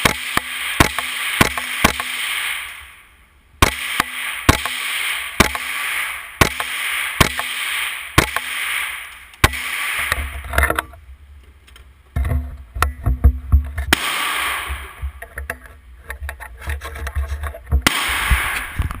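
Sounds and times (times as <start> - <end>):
gunshots: 0.0 - 3.0, 3.6 - 10.4, 13.9 - 15.2, 17.8 - 19.0
wind rumbling on microphone: 14.7 - 19.0.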